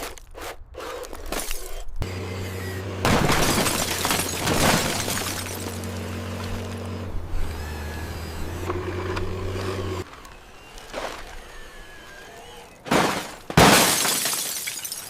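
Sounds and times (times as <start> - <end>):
toy car shattering and crunching: 3.0 - 6.0, 12.4 - 15.0.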